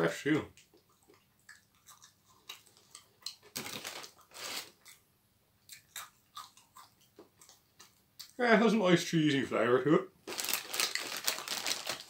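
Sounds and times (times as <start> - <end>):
person chewing crispy fries: 0.6 - 5.0, 5.6 - 8.4, 10.3 - 12.0.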